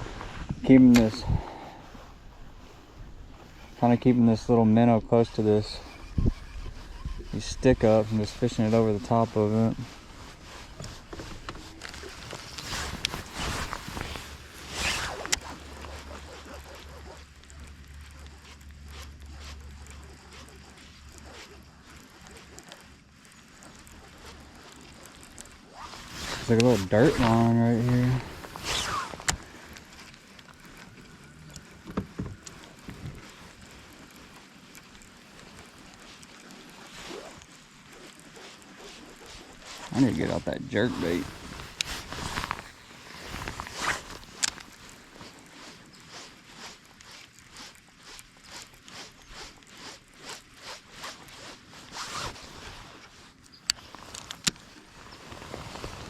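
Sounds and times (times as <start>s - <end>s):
sharp clicks: 0.8s - 1.2s
fishing reel whirring: 1.2s - 55.2s.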